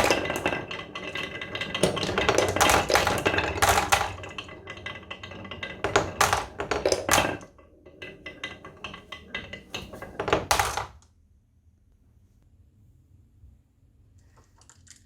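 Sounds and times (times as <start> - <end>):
knocks: 0.0 - 11.0
small hard objects clattering: 0.0 - 11.0.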